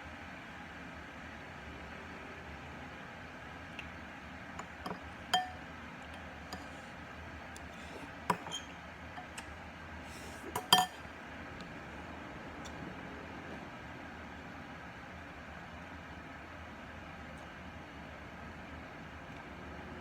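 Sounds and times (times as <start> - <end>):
glassware clinking: 4.6 - 5.6, 8.3 - 8.6, 10.6 - 11.0.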